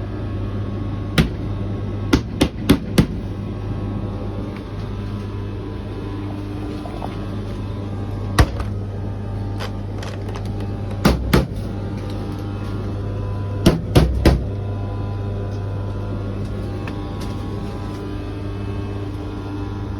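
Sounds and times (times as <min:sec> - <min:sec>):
tumble dryer motor hum: 0:00.0 - 0:19.9
sharp knocks in dryer: 0:01.2 - 0:03.2, 0:08.4 - 0:08.7, 0:11.0 - 0:11.6, 0:13.6 - 0:14.6.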